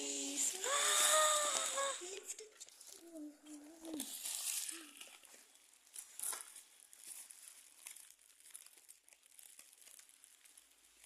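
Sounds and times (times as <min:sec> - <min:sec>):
packaging crinkling and rustling: 0:00.6 - 0:11.0.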